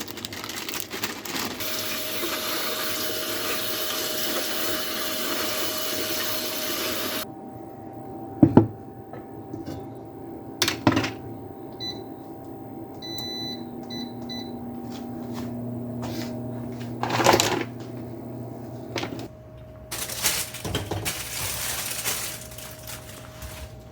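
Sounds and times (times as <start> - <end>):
appliance low hum: 0.0 - 23.9
running water: 1.6 - 7.2.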